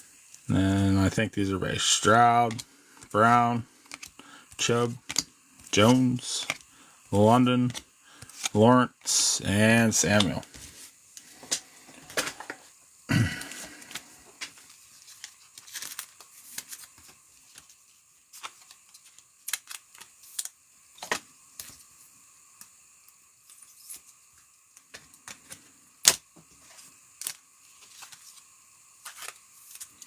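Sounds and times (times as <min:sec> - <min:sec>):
cards clicking: 0:03.8 - 0:06.6
card stock rustling: 0:13.5 - 0:21.7, 0:26.5 - 0:30.0.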